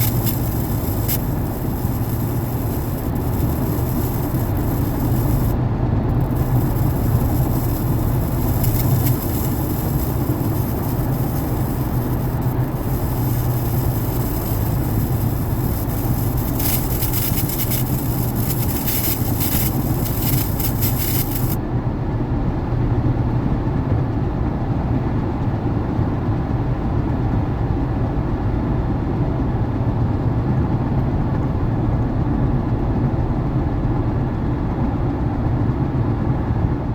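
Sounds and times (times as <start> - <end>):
speaker static hiss and crackle: 0.0 - 21.6.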